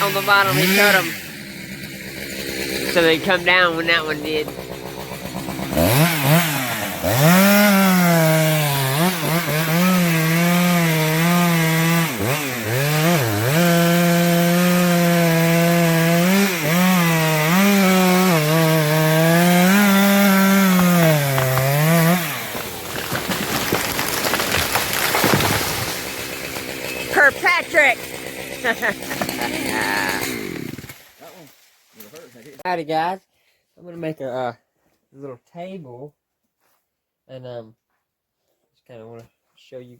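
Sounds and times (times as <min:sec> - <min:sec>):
chainsaw cutting wood: 0:00.0 - 0:31.3.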